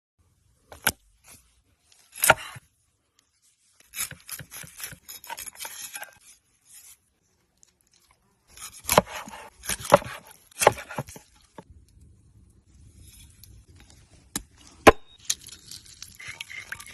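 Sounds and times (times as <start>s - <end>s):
knife chopping on cutting board: 8.8s - 11.2s.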